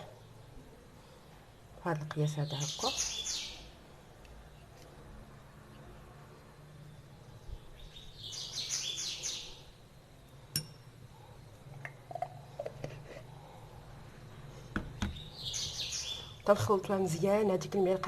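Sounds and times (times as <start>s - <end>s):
small bird chirping: 2.3s - 3.8s, 6.9s - 9.8s, 15.0s - 16.5s
metal spoon tapping glass: 10.5s - 10.8s.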